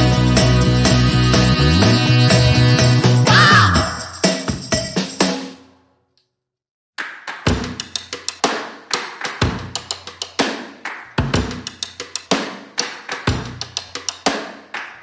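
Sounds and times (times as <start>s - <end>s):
drum kit playing steady beat: 0.0s - 5.6s, 7.5s - 14.7s.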